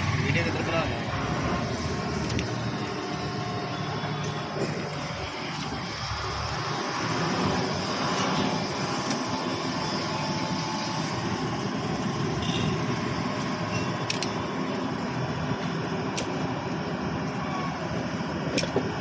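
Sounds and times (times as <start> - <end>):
sharp click: 14.0 - 14.4.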